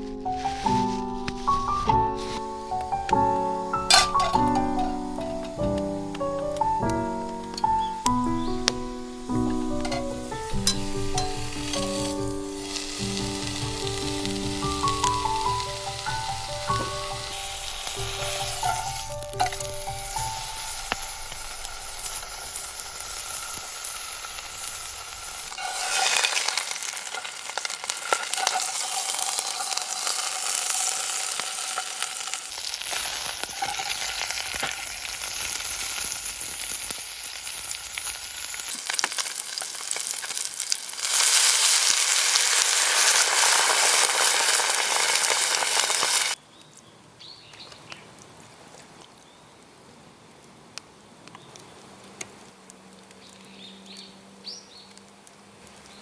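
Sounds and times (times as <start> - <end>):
food sizzling in a pan: 0.0 - 2.8, 9.2 - 46.4.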